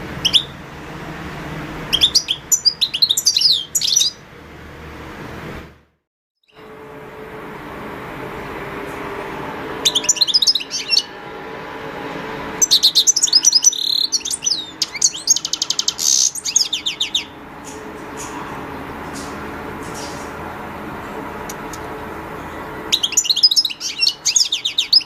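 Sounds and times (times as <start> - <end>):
finch singing: 0.2 - 0.6, 1.9 - 4.2, 9.7 - 11.2, 12.6 - 20.4, 22.4 - 25.0
steady low hum: 6.6 - 24.3.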